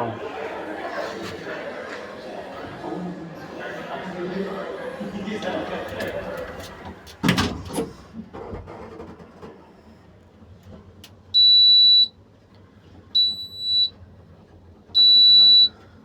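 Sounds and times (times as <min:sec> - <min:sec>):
elevator beeper high beeps: 0:11.3 - 0:12.2, 0:13.2 - 0:14.0, 0:14.9 - 0:15.8.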